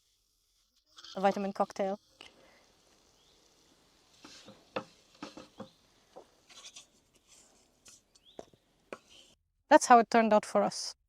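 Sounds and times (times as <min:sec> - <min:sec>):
utensils scraping and tapping food: 0:00.9 - 0:09.4.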